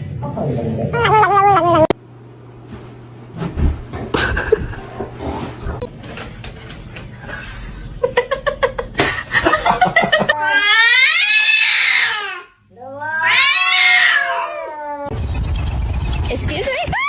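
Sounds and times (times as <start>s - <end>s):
cat yowling: 10.4s - 15.1s.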